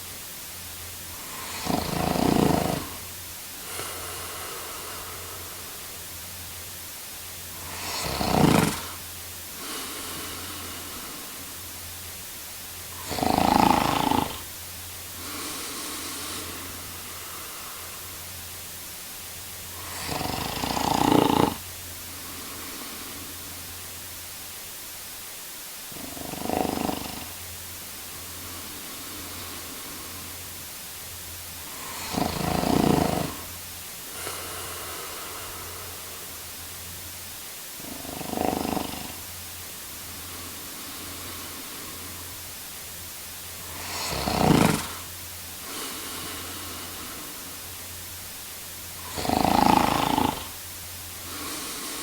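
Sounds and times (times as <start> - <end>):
man snoring: 1.1 - 6.0, 7.5 - 11.7, 12.9 - 14.6, 15.2 - 18.2, 19.7 - 23.6, 25.9 - 27.4, 28.2 - 30.4, 31.6 - 36.5, 37.8 - 39.3, 40.0 - 42.4, 43.6 - 47.7, 49.0 - 52.0.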